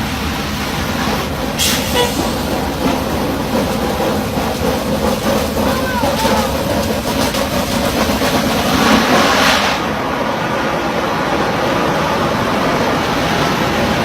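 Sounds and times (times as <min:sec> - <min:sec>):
machinery hissing: 0:00.0 - 0:10.3
drilling rig machinery running: 0:00.0 - 0:10.5.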